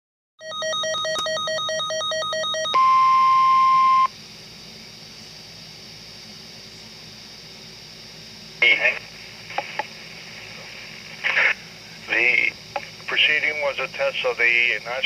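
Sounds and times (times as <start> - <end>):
steady alarm tone: 0.4 - 4.1
faint radio hiss: 5.0 - 15.0.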